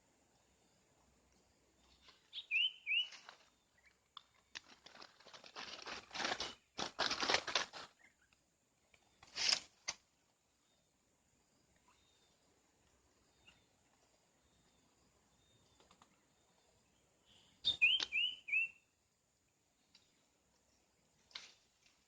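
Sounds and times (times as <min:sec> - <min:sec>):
whistled bird chirps: 0:02.3 - 0:03.3, 0:17.3 - 0:18.9
rustling and crinkling: 0:03.0 - 0:08.2, 0:08.9 - 0:10.1.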